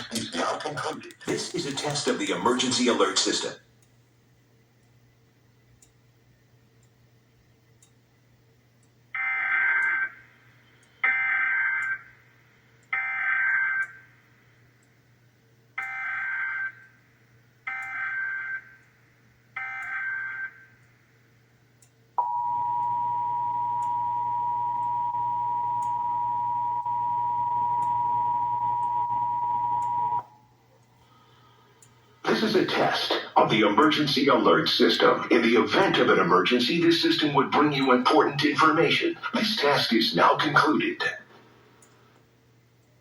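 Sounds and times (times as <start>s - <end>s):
two-tone attention signal: 22.2s - 30.3s.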